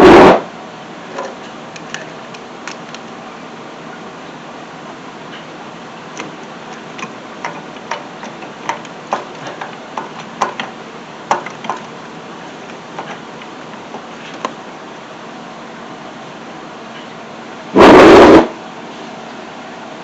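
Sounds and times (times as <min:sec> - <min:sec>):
tools clicking and knocking: 0:01.2 - 0:03.0, 0:06.2 - 0:10.7, 0:11.3 - 0:11.9.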